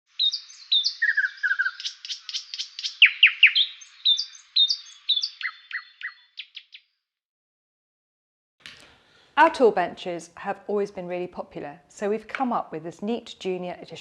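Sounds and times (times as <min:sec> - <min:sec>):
songbird chirping: 0:00.1 - 0:07.0.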